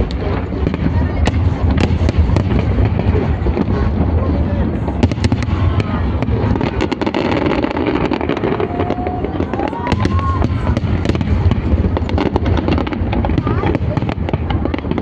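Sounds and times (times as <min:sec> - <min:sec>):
firecrackers crackling: 0:00.0 - 0:15.0.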